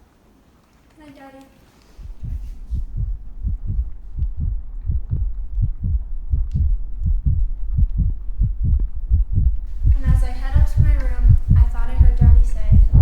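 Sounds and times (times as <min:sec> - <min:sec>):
heartbeat thumps: 0:02.0 - 0:13.0.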